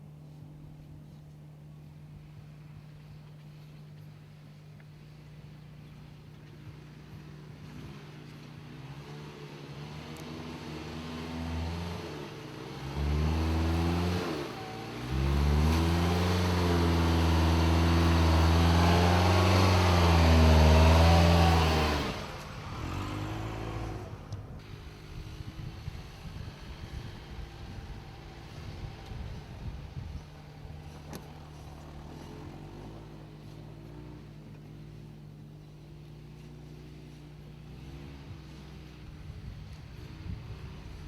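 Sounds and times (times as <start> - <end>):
car engine revving: 7.6 - 41.0.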